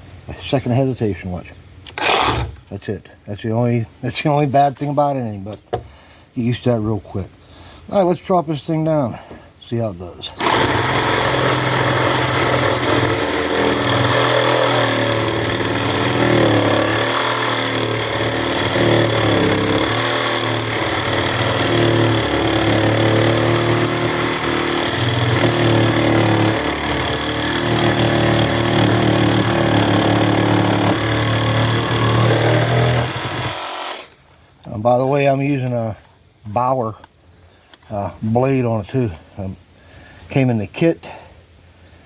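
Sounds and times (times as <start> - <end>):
reciprocating saw cutting wood: 1.9 - 2.7, 10.4 - 34.2.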